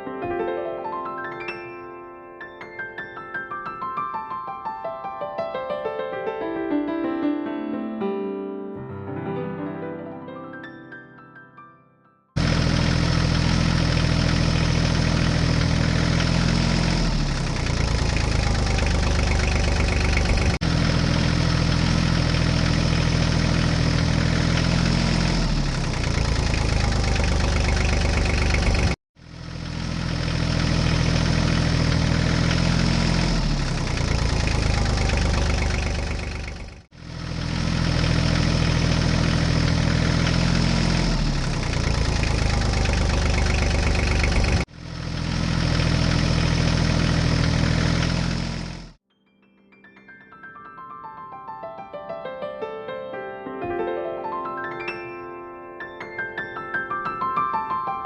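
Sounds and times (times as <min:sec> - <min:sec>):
tractor engine idling: 0:12.4 - 0:49.0.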